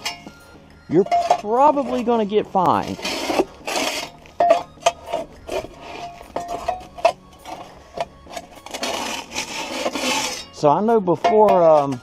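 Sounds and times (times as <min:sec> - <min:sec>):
hand tool scraping dirt: 0:00.9 - 0:12.0.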